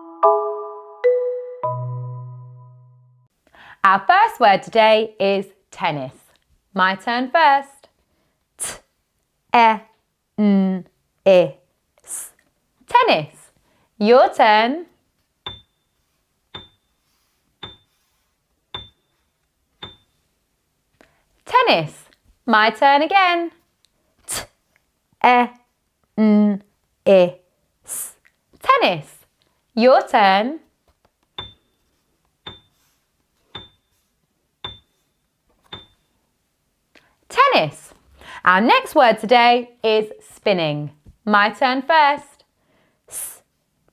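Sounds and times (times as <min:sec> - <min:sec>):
high clinking ping: 0:15.5 - 0:15.8, 0:16.6 - 0:16.9, 0:17.6 - 0:17.9, 0:18.8 - 0:19.1, 0:19.8 - 0:20.2, 0:31.4 - 0:31.8, 0:32.5 - 0:32.8, 0:33.6 - 0:33.9, 0:34.6 - 0:35.0, 0:35.7 - 0:36.2.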